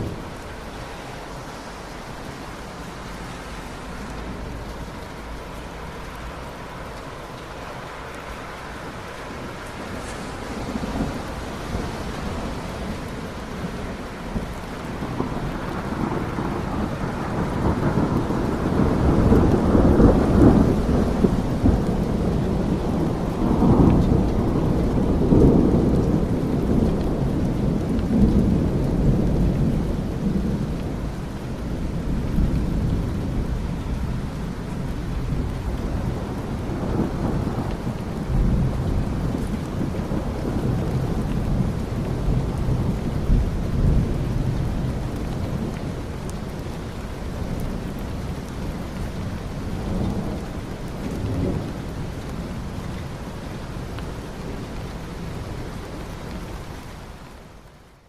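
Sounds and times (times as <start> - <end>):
rolling thunder rumble: 0.0 - 57.3
steady rain: 0.0 - 58.0.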